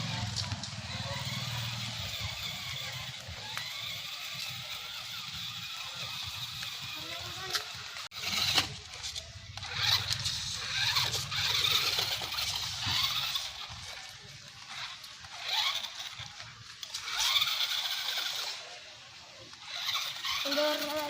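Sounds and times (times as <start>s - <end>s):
toy truck electric motor whining: 0.0s - 21.0s.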